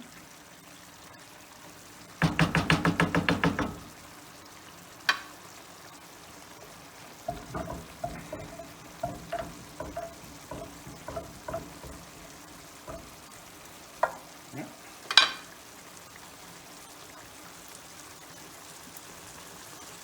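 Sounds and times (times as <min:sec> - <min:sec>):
faint sizzle: 0:00.0 - 0:20.0
metal utensil knocking on pot: 0:02.2 - 0:04.0, 0:07.3 - 0:13.4, 0:14.0 - 0:14.3, 0:15.1 - 0:15.5.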